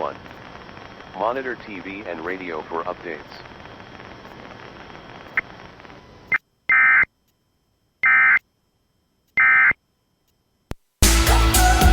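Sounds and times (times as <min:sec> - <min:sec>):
receiver hiss: 0:00.0 - 0:11.9
screechy digital data tones: 0:06.7 - 0:07.1, 0:08.0 - 0:08.4, 0:09.4 - 0:09.8.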